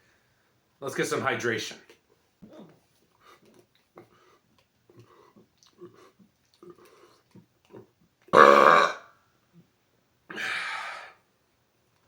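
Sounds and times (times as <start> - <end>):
man burping loudly: 8.3 - 9.1.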